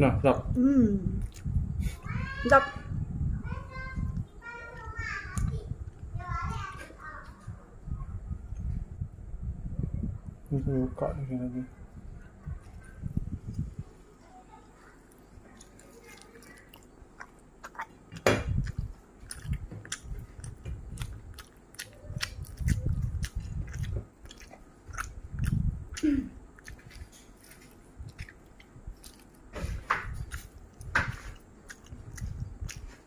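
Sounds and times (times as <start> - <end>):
crunching and low thuds: 18.0 - 21.4.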